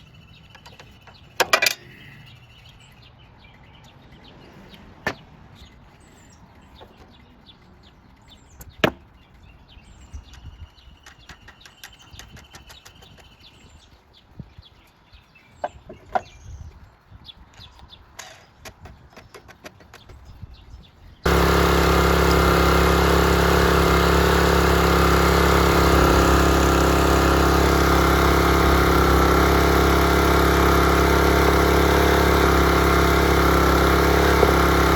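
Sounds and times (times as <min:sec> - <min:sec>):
small petrol engine running: 0:21.3 - 0:34.9.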